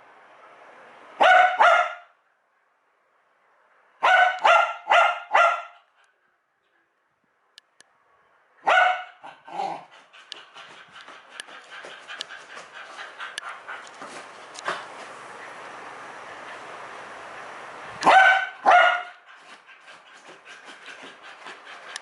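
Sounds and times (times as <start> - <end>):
dog barking: 1.2 - 2.1, 4.0 - 5.9, 8.6 - 9.8, 18.0 - 19.2.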